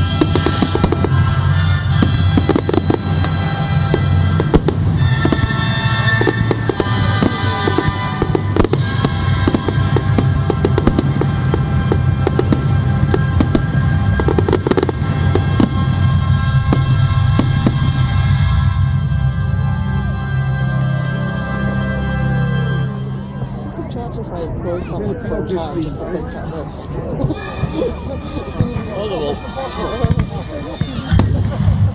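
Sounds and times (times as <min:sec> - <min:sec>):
fireworks banging and crackling: 0:00.0 - 0:19.1, 0:24.9 - 0:31.9
loud music: 0:00.0 - 0:23.6.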